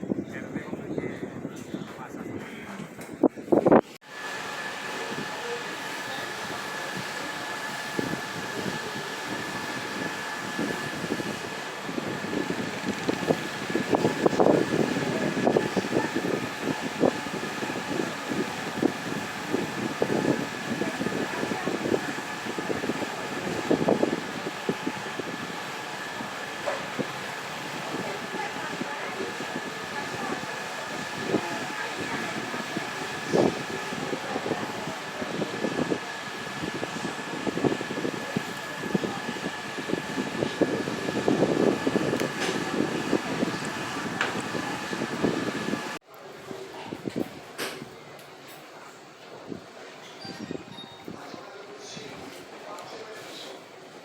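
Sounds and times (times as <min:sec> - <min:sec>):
wind buffeting microphone: 0:00.0 - 0:46.0
boat engine whining: 0:04.1 - 0:46.0.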